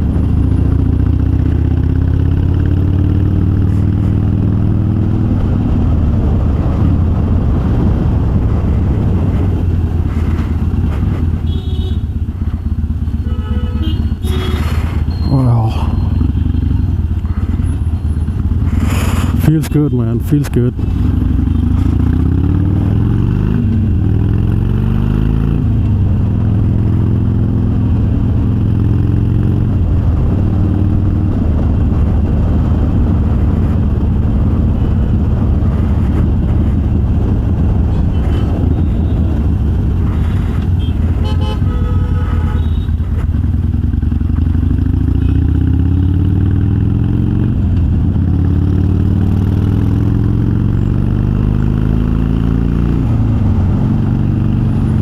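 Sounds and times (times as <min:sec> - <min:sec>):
motorcycle engine running: 0:00.0 - 0:55.0
vehicle horn: 0:11.4 - 0:12.1, 0:13.2 - 0:14.8, 0:37.9 - 0:39.4, 0:40.7 - 0:43.1.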